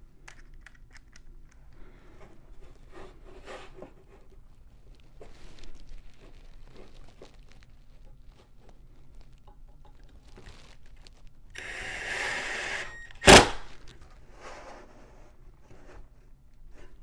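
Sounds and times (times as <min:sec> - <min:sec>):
cordless drill whirring: 0:11.6 - 0:13.8.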